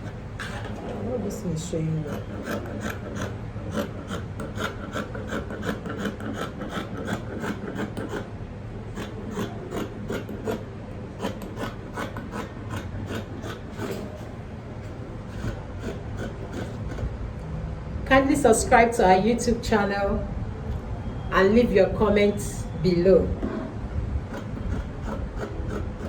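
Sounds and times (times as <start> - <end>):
scratching and rubbing on paper: 0.0 - 8.3, 8.9 - 17.2, 24.3 - 26.0.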